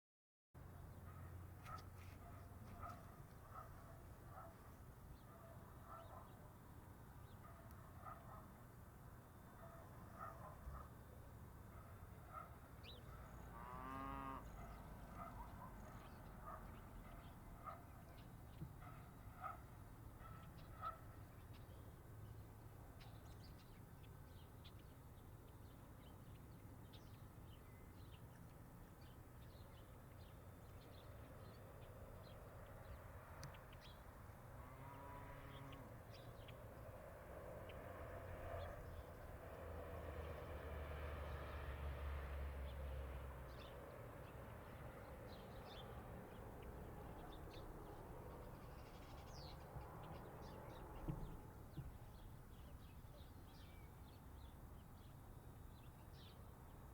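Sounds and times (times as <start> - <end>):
birds chirping: 34.8 - 36.7, 45.3 - 55.1.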